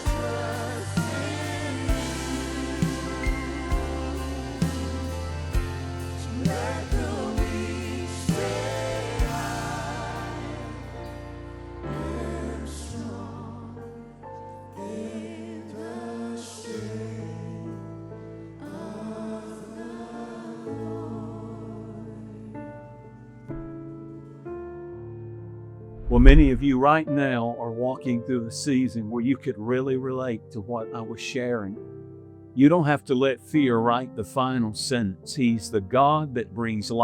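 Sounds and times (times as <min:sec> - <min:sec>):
sustained bass chords: 0:00.0 - 0:14.2, 0:26.0 - 0:26.8
choir singing slow song: 0:00.0 - 0:23.7.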